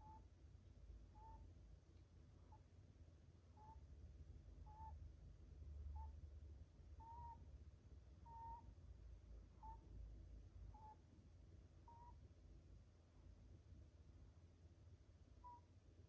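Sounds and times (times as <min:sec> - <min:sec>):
rabbit high squeaks: 0:08.2 - 0:08.7.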